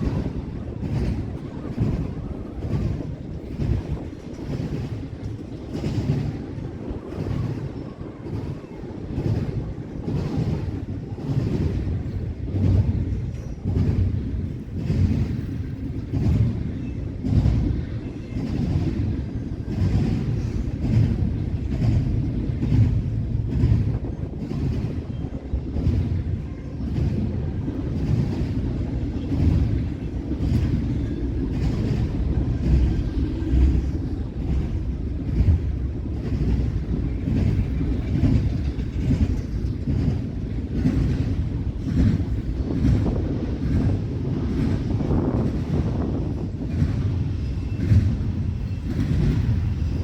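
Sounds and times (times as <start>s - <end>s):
low rumble of railroad cars: 0.0s - 50.0s
train wheels clacking on rails: 0.0s - 50.0s.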